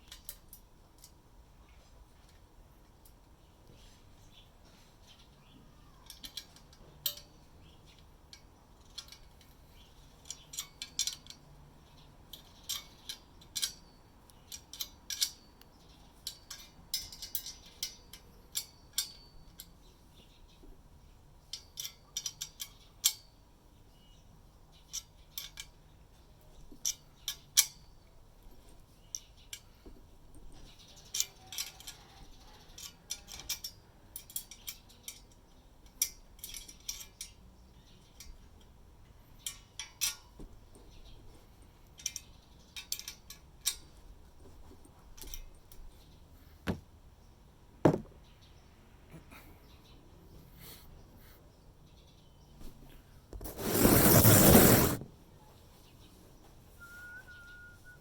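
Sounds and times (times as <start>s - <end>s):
small hard parts clicking and clinking: 6.0s - 13.9s.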